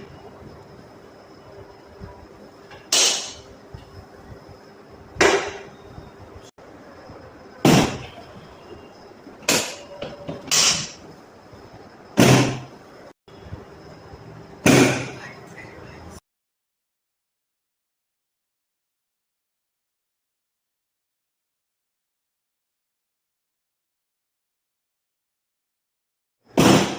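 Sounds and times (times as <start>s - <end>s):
sharp thumps of chiropractic adjustment: 12.2s - 12.7s.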